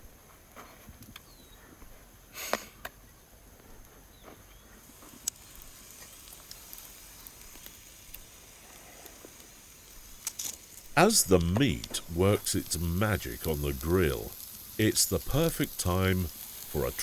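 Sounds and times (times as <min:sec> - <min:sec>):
burning wood crackling: 0:00.0 - 0:17.0
steaks sizzling: 0:04.8 - 0:17.0.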